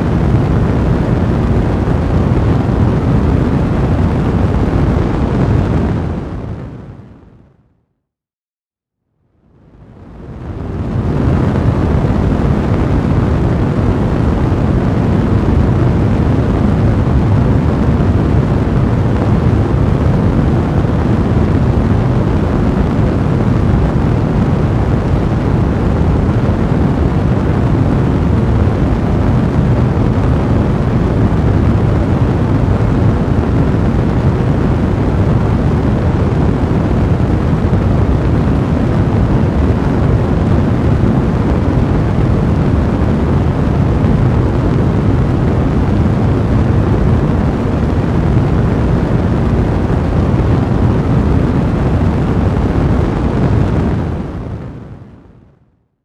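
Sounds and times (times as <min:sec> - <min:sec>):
fire blazing: 0:00.0 - 0:06.8, 0:10.0 - 0:55.0.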